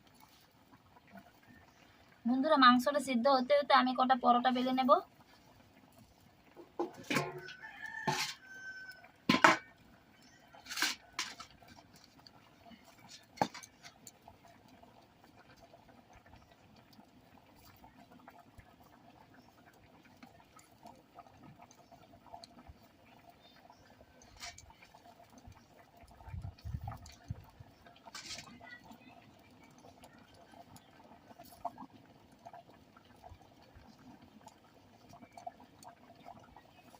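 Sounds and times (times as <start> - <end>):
rooster crowing: 7.3 - 9.2.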